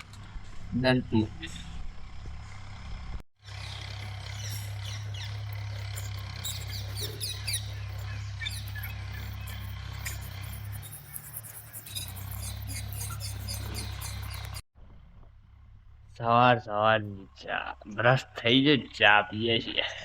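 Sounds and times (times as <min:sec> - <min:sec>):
small birds chirping: 0:03.4 - 0:14.6.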